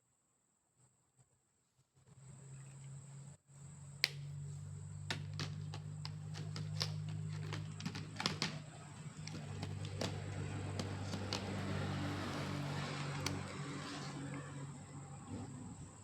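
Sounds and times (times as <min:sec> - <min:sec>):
sharp clicks and taps: 0:05.1 - 0:11.9.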